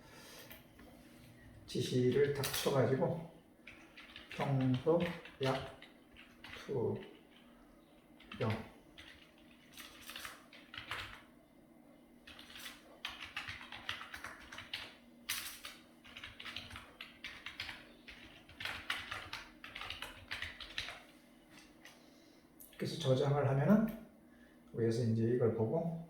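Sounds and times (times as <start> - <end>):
computer keyboard typing: 1.8 - 11.3, 12.2 - 22.0.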